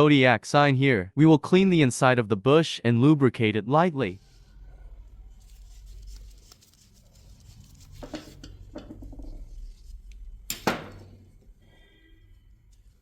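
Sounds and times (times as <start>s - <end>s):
faint scratching: 4.1s - 10.4s.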